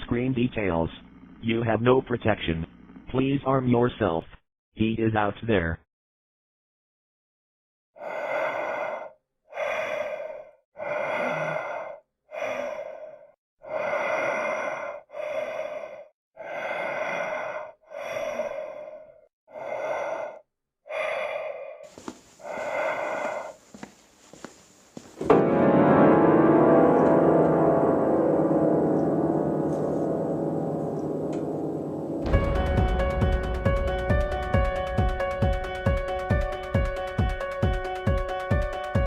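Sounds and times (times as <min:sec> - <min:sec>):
heavy human breathing: 0:08.0 - 0:25.2.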